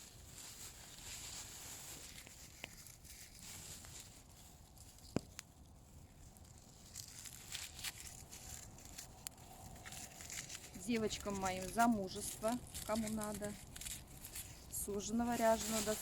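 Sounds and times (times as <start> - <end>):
bonfire crackling: 0.0 - 16.0.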